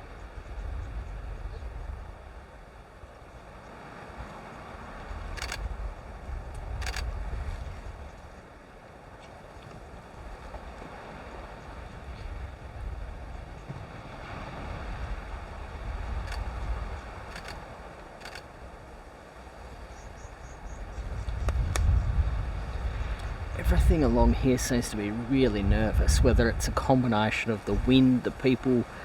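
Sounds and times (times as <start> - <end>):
wind buffeting microphone: 0.0 - 29.0
camera shutter clicks: 5.3 - 5.6, 6.8 - 7.1.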